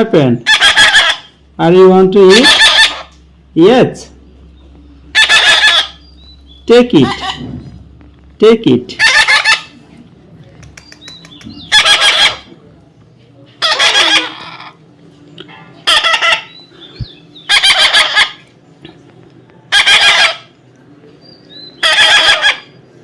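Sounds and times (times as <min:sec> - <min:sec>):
parrot screeching: 0:00.4 - 0:01.4, 0:02.3 - 0:03.2, 0:05.1 - 0:06.0, 0:07.0 - 0:07.5, 0:08.9 - 0:09.8, 0:11.7 - 0:12.5, 0:13.6 - 0:14.8, 0:15.8 - 0:16.6, 0:17.5 - 0:18.5, 0:19.7 - 0:20.5, 0:21.8 - 0:22.8.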